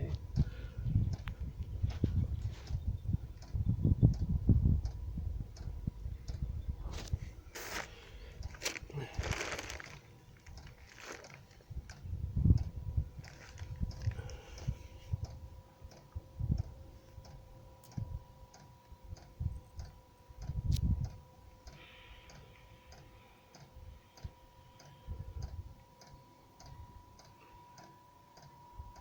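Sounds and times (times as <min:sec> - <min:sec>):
low thumps and rumble: 0:00.0 - 0:18.4, 0:19.0 - 0:21.3
blower fan whine: 0:00.0 - 0:29.0
fuel pump ticking: 0:00.2 - 0:02.0.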